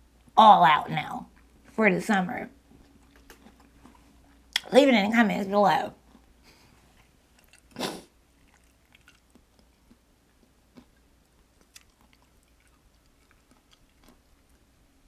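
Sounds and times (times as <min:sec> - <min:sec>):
person chewing food: 0:02.7 - 0:04.6, 0:06.0 - 0:15.0.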